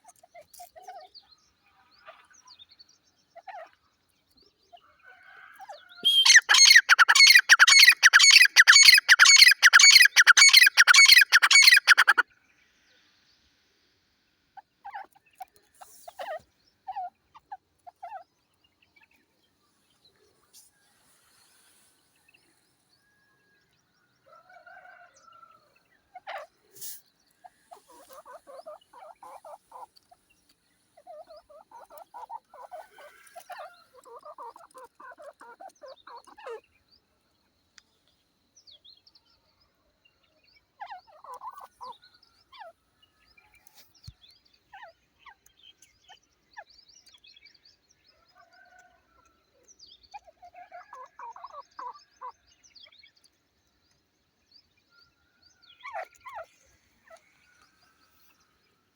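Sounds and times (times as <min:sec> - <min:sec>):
francolin chattering calls: 0:06.0 - 0:12.2
high bird chirps: 0:06.0 - 0:12.2.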